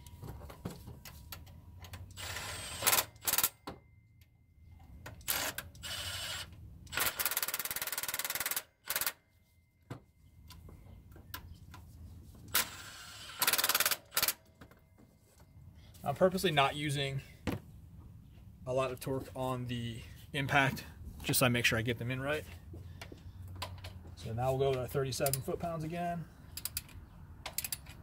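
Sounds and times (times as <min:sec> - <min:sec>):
tool handling clicks: 0:25.2 - 0:25.5, 0:26.5 - 0:28.0.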